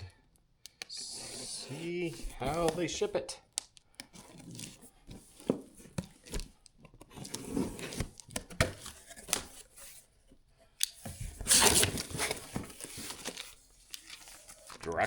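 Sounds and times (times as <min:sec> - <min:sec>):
cardboard tearing: 0:01.2 - 0:03.1, 0:04.1 - 0:10.0, 0:11.2 - 0:15.0
cardboard box clicks and rustles: 0:04.1 - 0:10.0, 0:11.0 - 0:15.0.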